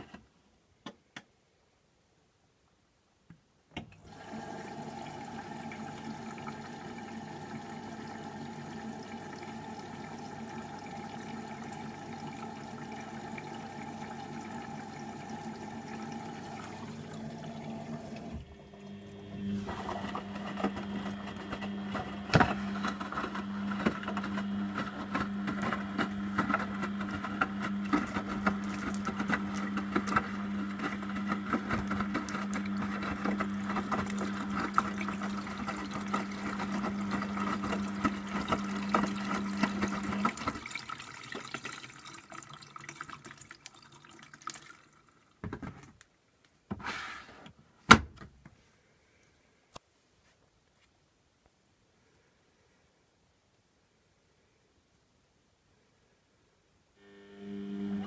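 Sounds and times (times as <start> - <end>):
washing machine hum: 3.9 - 46.0, 57.0 - 58.0
water running in washing machine: 4.0 - 45.8, 57.4 - 58.0.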